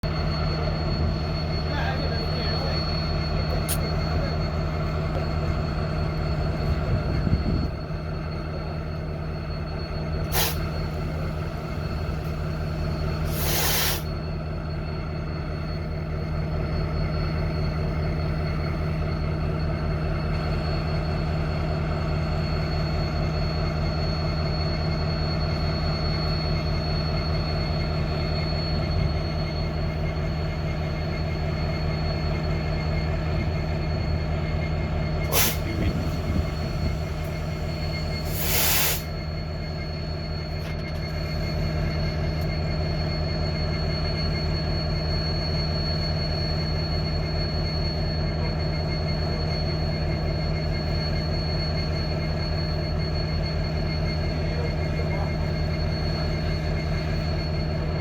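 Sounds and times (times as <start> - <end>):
diesel locomotive engine running: 0.0 - 58.0
short air hisses: 10.3 - 10.7, 13.3 - 14.1, 35.3 - 35.9, 38.2 - 39.1.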